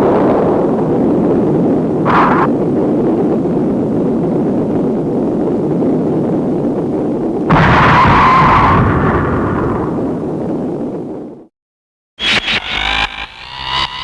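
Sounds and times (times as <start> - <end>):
explosion blast with ringing tone: 0.0 - 5.1, 6.7 - 11.2
low rumble: 0.0 - 11.5.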